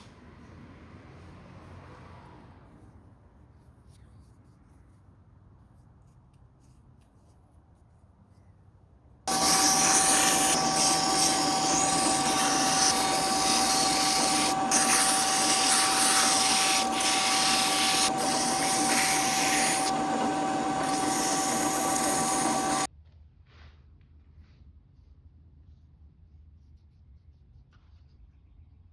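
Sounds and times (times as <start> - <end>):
electric power tool whining: 9.3 - 22.9.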